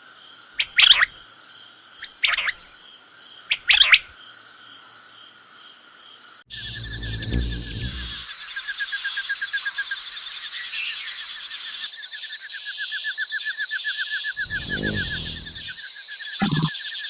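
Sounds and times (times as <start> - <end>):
low rumble: 6.5 - 8.3, 14.4 - 15.8
small bird chirping: 16.4 - 16.7.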